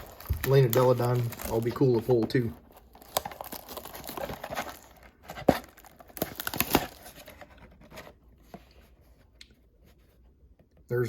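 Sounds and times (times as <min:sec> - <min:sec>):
plastic wrapping tearing and crinkling: 0:00.0 - 0:07.4.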